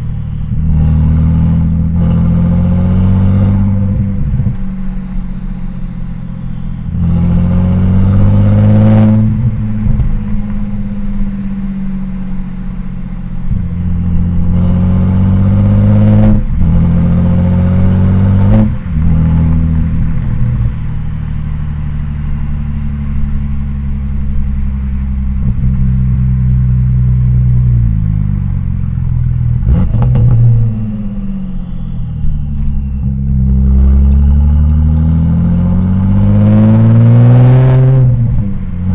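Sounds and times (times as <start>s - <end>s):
car engine accelerating: 0.0s - 38.9s
turbo whistle: 0.2s - 21.3s, 29.8s - 33.3s, 35.1s - 38.9s.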